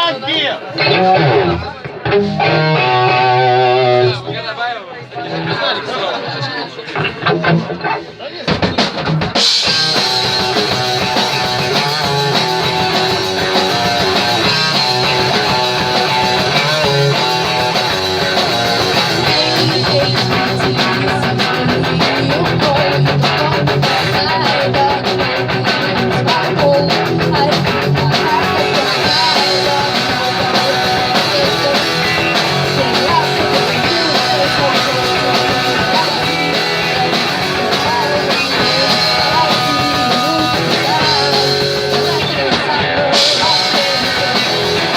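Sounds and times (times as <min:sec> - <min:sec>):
punk rock band playing live: 0:00.0 - 0:44.9.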